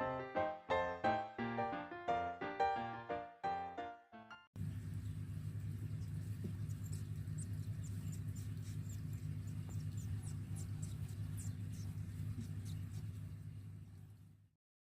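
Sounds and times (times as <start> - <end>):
steady low hum: 4.6 - 14.5
gerbil pups squeaking: 6.1 - 13.4.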